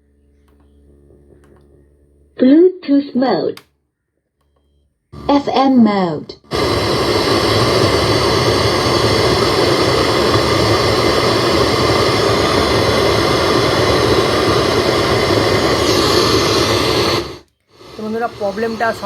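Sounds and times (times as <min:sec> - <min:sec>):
radio static hiss: 0:05.2 - 0:19.0.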